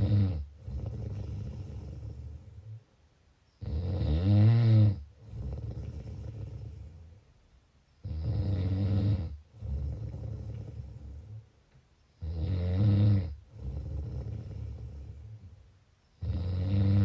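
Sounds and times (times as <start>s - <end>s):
person snoring: 0.0s - 2.7s, 3.6s - 7.1s, 8.0s - 11.4s, 12.2s - 15.4s, 16.2s - 17.0s.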